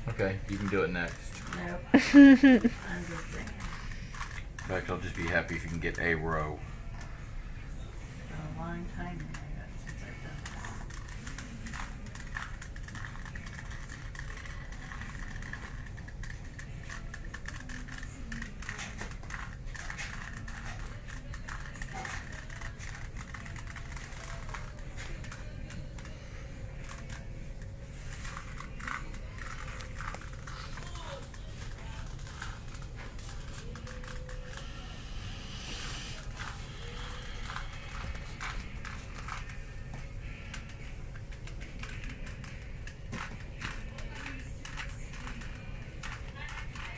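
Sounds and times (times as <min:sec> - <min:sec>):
low room hum: 0:00.0 - 0:46.9
puzzle cube clicking: 0:28.2 - 0:39.5, 0:41.4 - 0:46.9.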